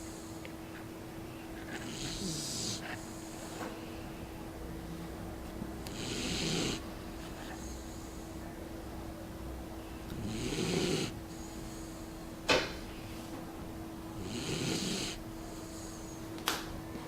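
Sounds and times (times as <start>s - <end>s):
pet snoring: 1.6s - 3.6s, 5.8s - 8.3s, 10.1s - 12.2s, 14.2s - 16.2s.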